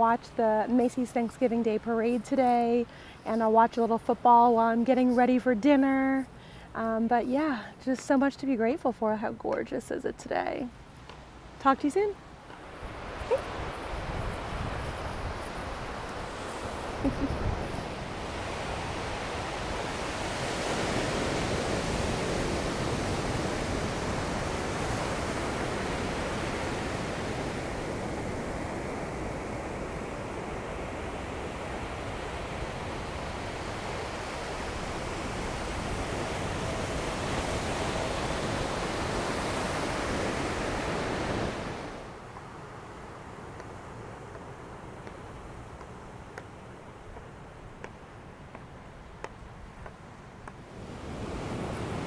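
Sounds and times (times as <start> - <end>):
waves breaking on beach: 11.2 - 52.0.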